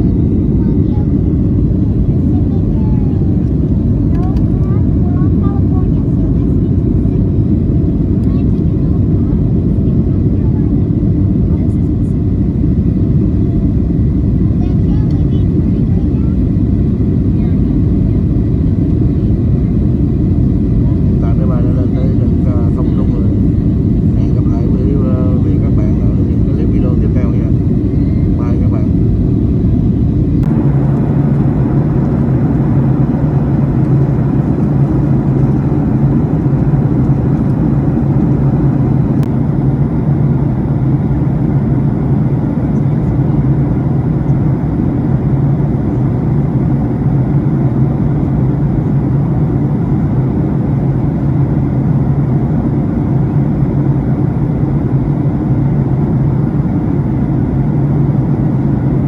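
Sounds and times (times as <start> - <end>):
jet engines droning: 0.0 - 11.6, 12.2 - 59.0
low hum: 28.7 - 59.0
rushing air: 30.4 - 40.6.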